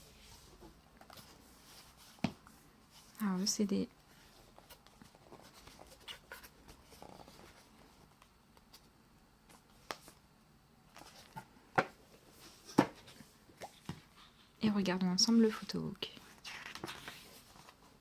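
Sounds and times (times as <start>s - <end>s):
rustling of cd packaging: 4.1s - 8.9s, 10.9s - 14.3s, 16.2s - 18.0s.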